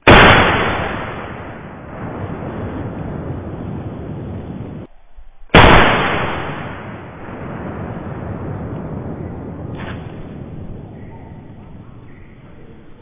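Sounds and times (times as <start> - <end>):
noisy background: 8.5 - 13.0.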